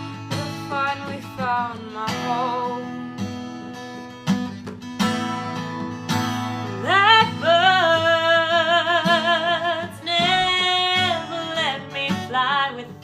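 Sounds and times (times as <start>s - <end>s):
acoustic guitar strumming: 0.0s - 13.0s
person singing with vibrato: 6.7s - 13.0s.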